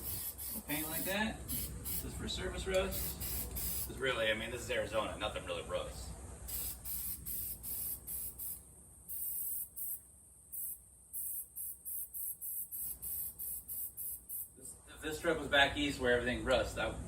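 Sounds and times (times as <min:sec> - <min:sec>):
aerosol spray bursts: 0:00.0 - 0:02.1, 0:02.8 - 0:03.9, 0:06.5 - 0:10.0, 0:10.6 - 0:14.5.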